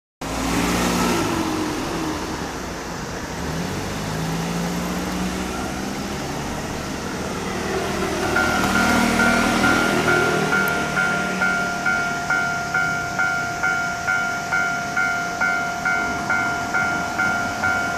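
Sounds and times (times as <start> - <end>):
vehicle engine pulling away: 0.2 - 14.6
road traffic: 0.2 - 17.9
level crossing warning bell: 5.0 - 17.9.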